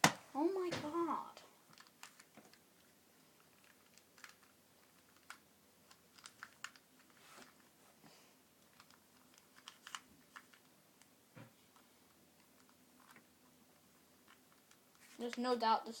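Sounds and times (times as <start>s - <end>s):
plastic puzzle cube clicking: 1.7s - 2.6s, 3.4s - 7.2s, 8.6s - 10.7s.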